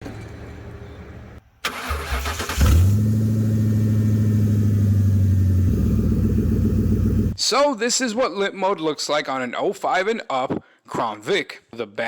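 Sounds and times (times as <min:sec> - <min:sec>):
car engine cranking and idling: 0:01.6 - 0:07.4.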